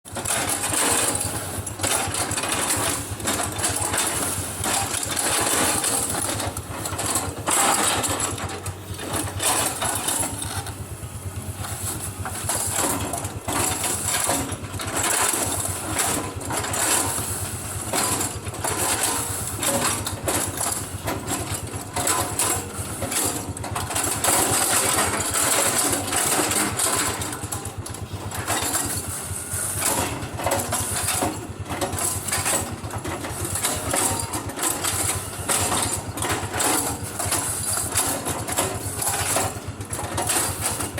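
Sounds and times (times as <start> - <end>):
machine clattering: 0.1 - 40.9
low motor hum: 4.1 - 18.6.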